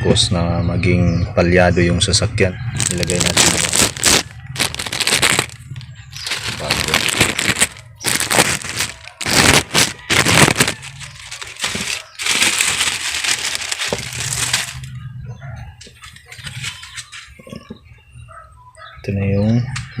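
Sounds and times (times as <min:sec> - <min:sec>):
plastic wrapping crinkling: 0:02.8 - 0:15.0, 0:16.0 - 0:17.6.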